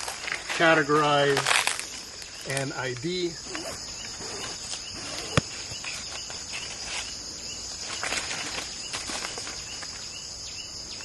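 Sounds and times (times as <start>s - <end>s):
crickets and insects chirping: 0.0s - 11.0s
soft rustles and scuffs: 3.5s - 7.2s.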